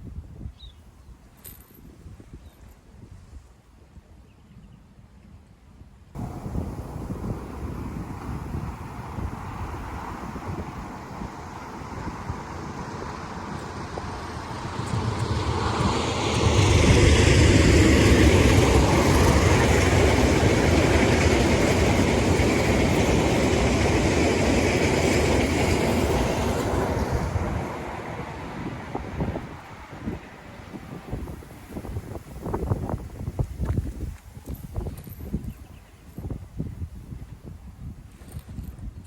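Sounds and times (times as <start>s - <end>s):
train passing close by: 6.2s - 34.2s.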